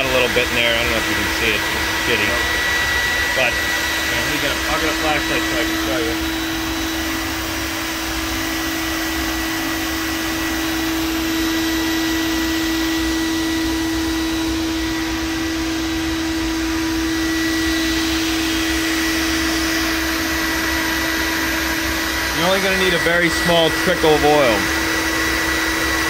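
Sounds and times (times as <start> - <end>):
furnace blower whirring: 0.0 - 26.0.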